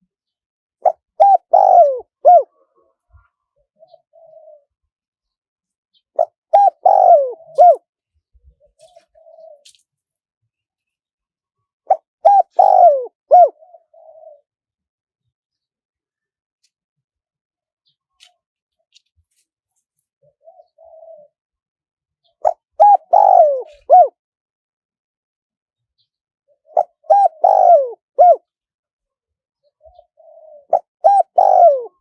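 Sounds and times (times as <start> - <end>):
dove cooing: 0.8 - 4.8, 6.2 - 7.9, 8.6 - 9.8, 11.9 - 14.5, 20.2 - 21.4, 22.3 - 24.2, 26.5 - 28.5, 29.7 - 32.0.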